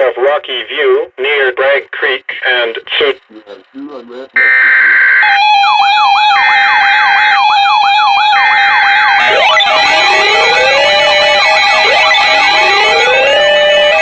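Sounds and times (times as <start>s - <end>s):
fast siren sweep: 4.4s - 14.0s
rising siren glides: 4.4s - 14.0s
steady alert tone: 9.2s - 14.0s.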